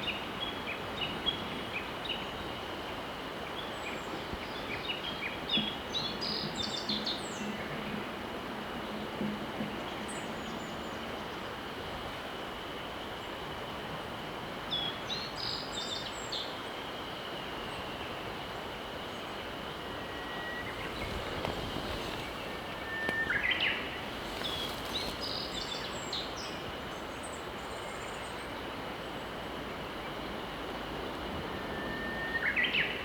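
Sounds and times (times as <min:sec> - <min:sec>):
songbirds calling: 0:14.8 - 0:29.4
river rushing: 0:18.0 - 0:27.8.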